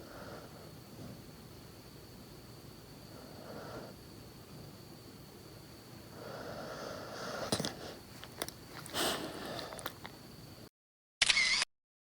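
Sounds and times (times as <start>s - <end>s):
dog snoring: 0.0s - 1.2s, 3.1s - 4.0s, 6.1s - 8.0s.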